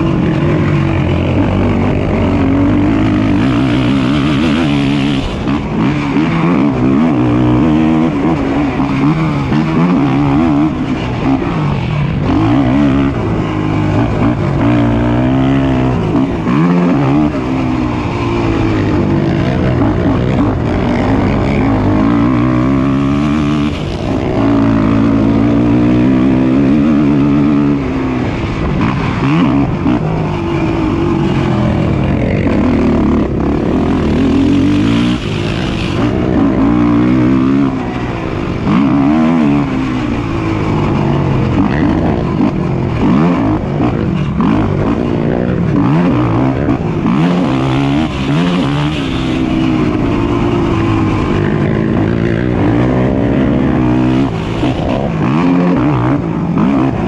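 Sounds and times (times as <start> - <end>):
atv engines revving: 0.0 - 57.0.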